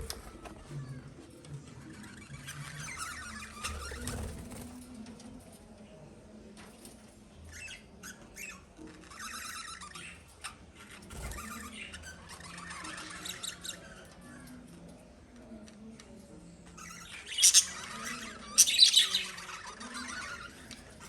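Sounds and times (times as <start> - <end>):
lovebirds chirping: 16.8 - 21.0.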